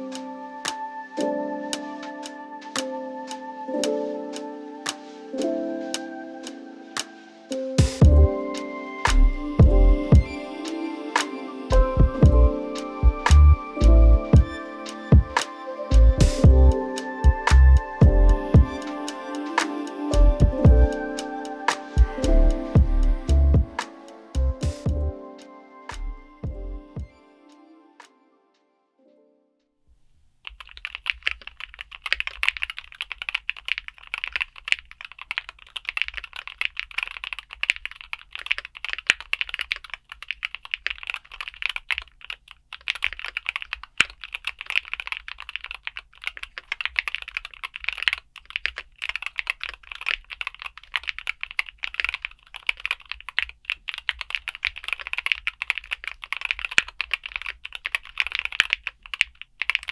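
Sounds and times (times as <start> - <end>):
fast keyboard typing: 9.1 - 10.4, 13.1 - 15.5, 16.2 - 22.4, 30.0 - 59.9.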